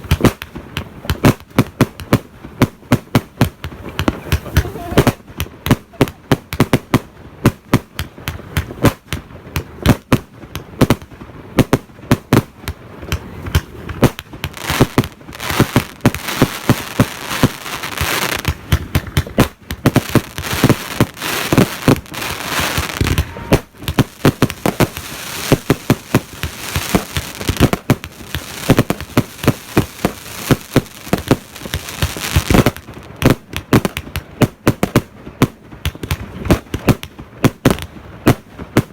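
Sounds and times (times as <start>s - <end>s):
dense crackling hiss: 0.0s - 38.9s
firework battery shots: 7.5s - 35.2s.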